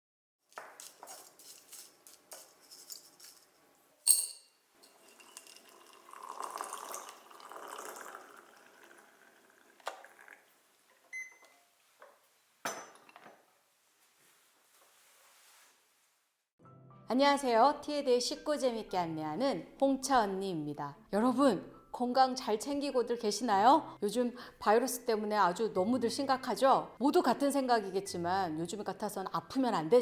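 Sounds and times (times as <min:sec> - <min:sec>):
porcelain clinking: 0:04.0 - 0:08.2
water pouring: 0:04.8 - 0:10.6.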